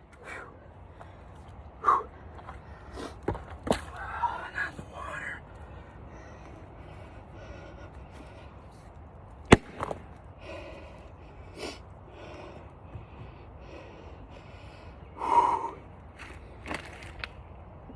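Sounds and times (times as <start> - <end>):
man breathing heavily: 0.0 - 9.2, 10.1 - 16.6
axe striking wood: 9.5 - 10.0.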